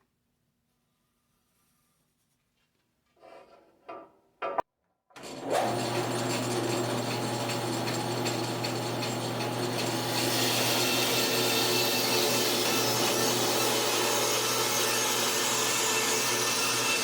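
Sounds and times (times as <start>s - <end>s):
power tool motor running: 5.2s - 17.0s
power tool working wood: 5.2s - 17.0s.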